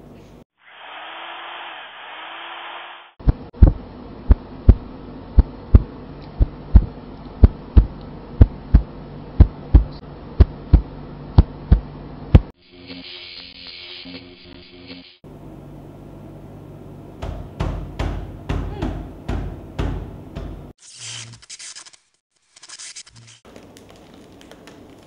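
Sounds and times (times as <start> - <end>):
heartbeat double thumps: 3.2 - 12.5.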